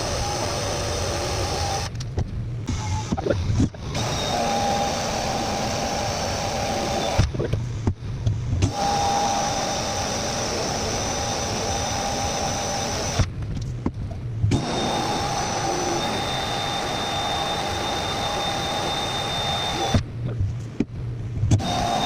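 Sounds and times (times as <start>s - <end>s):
loud machine whir: 0.0s - 2.0s, 2.7s - 7.5s, 8.6s - 13.3s, 14.5s - 20.0s, 21.5s - 22.0s.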